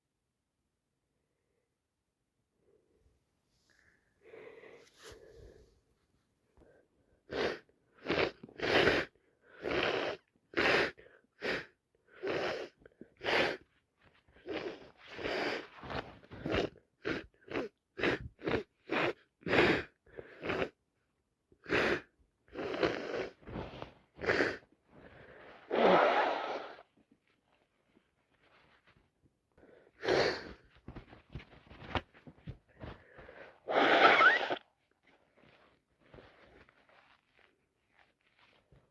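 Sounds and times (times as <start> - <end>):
woman sneezing and gasping: 25.5 - 26.9, 32.8 - 34.7.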